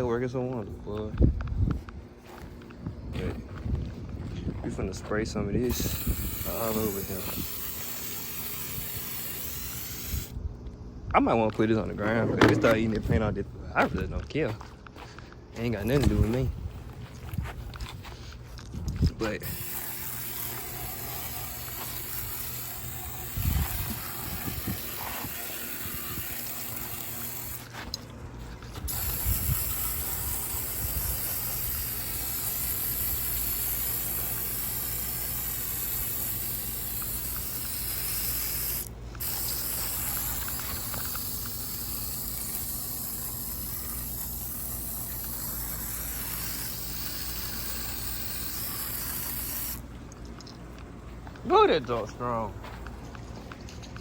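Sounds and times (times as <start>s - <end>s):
aerosol can spraying: 5.7s - 10.4s, 19.4s - 27.8s, 28.8s - 49.8s
knocks from handling can: 12.3s - 12.8s.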